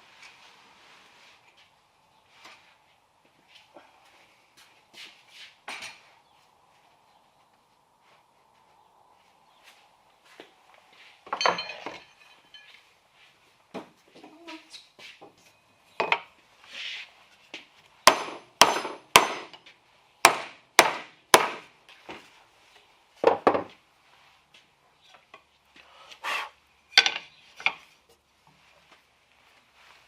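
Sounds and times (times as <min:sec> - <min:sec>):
hand tool striking wood: 0:18.0 - 0:21.7.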